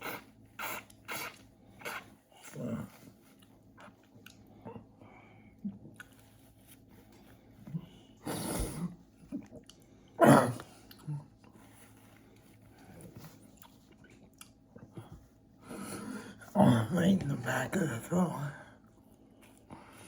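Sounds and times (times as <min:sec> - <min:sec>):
person chewing with mouth clicks: 0:03.3 - 0:04.9, 0:05.6 - 0:06.4, 0:09.3 - 0:09.9, 0:13.5 - 0:15.1.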